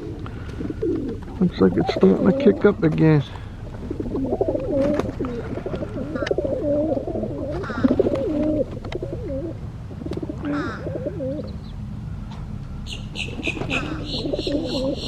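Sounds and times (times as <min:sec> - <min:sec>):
doves cooing: 0:00.0 - 0:15.0
higher bird chirps: 0:12.7 - 0:15.0.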